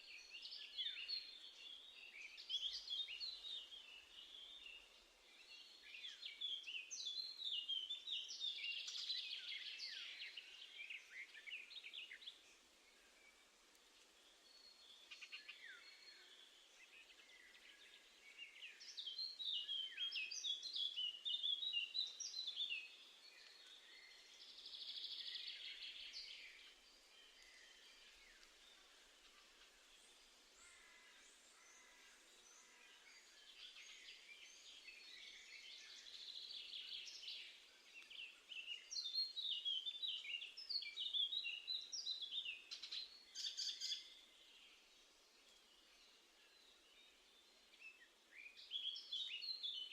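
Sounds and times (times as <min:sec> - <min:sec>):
songbird twittering: 0:14.2 - 0:49.9.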